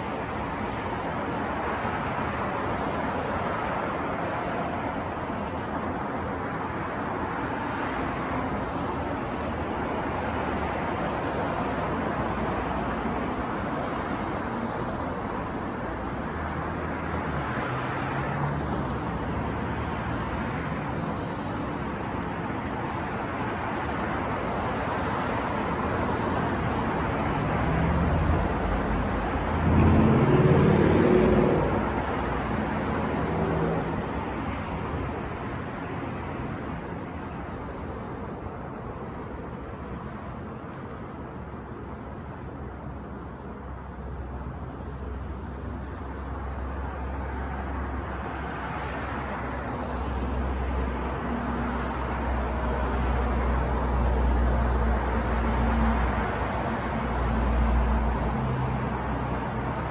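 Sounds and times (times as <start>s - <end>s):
passing cars: 0.0s - 59.9s
heavy vehicle engine passing: 26.9s - 37.2s.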